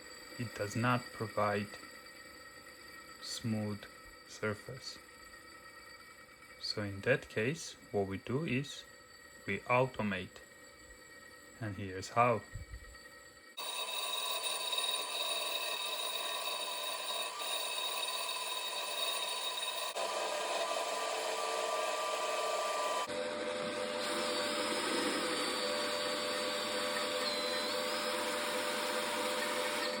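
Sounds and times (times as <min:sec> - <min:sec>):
lathe running: 0:00.0 - 0:30.0
electric drill motor whine: 0:12.5 - 0:30.0.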